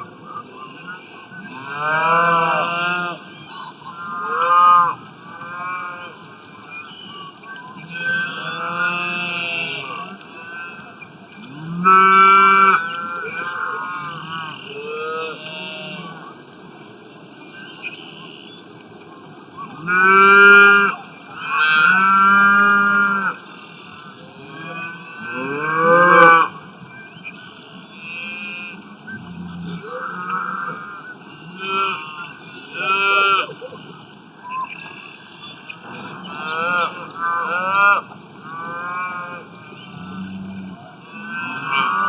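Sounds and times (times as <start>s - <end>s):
cows mooing: 7.9s - 10.8s, 19.8s - 26.5s, 28.0s - 33.8s, 35.9s - 42.0s.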